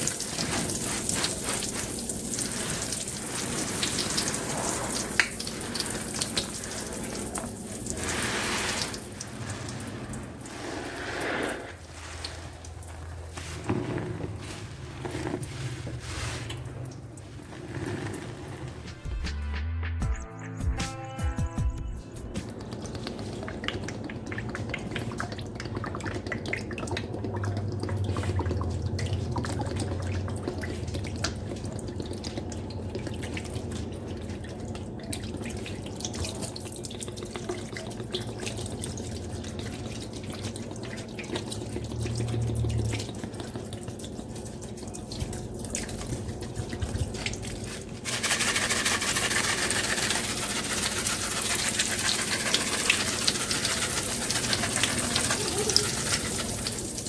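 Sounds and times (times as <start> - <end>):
running water hiss: 0.0 - 19.0, 47.6 - 57.0
water dripping: 0.0 - 19.0, 22.2 - 57.0.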